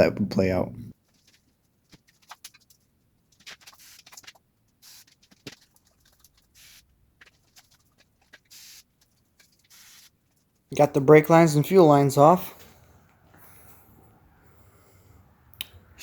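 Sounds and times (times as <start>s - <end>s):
hissy scrapes: 3.5s - 5.7s, 6.4s - 10.2s.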